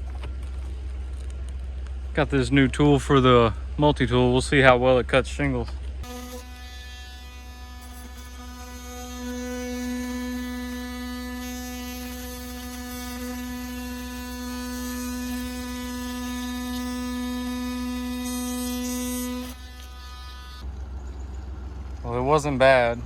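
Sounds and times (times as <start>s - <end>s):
oscillating multi-tool cutting shingles: 6.0s - 20.7s.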